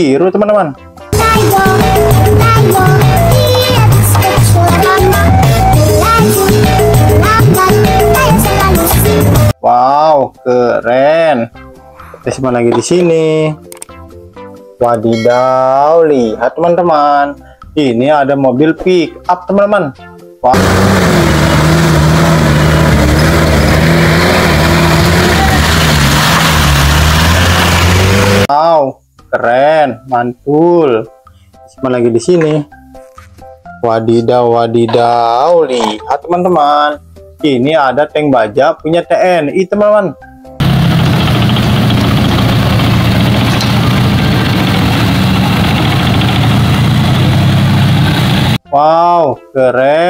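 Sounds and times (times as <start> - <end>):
car engine running: 20.6 - 28.5, 40.6 - 48.6.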